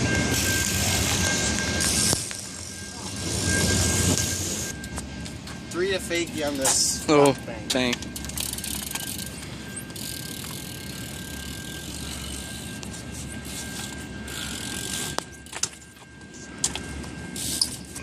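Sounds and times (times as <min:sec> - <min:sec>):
bicycle rolling over pavement: 0:00.0 - 0:05.9, 0:07.9 - 0:18.0.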